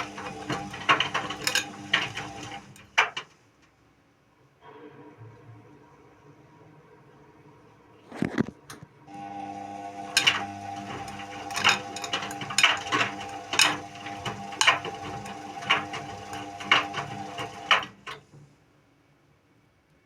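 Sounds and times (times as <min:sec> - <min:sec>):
washing machine motor hum: 0:00.0 - 0:03.2, 0:09.1 - 0:18.4.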